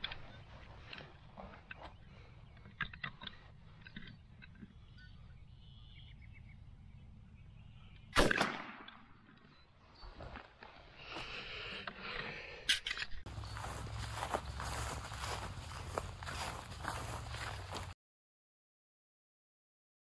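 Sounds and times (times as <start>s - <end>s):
shotgun shot with echo: 8.1s - 9.0s.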